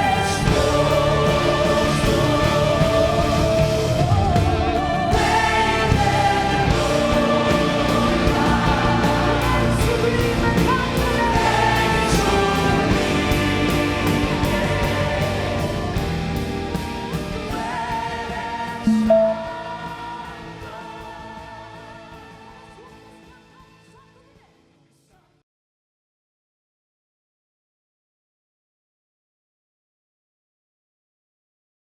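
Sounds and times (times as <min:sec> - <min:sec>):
worship band music: 0:00.0 - 0:23.0
group singing: 0:00.0 - 0:23.1.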